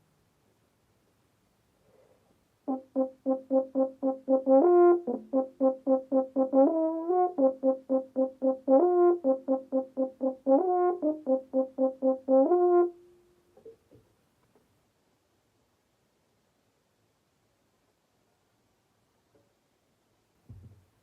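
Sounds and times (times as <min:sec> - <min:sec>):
trombone playing short repeated notes: 0:02.7 - 0:13.2.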